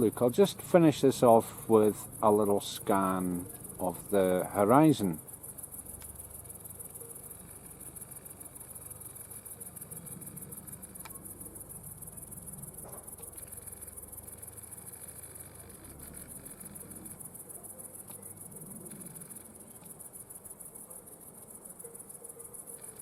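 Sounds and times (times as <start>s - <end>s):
insects chirring: 0.0s - 23.0s
faint clicks: 5.9s - 6.2s, 10.4s - 11.5s, 12.8s - 20.2s.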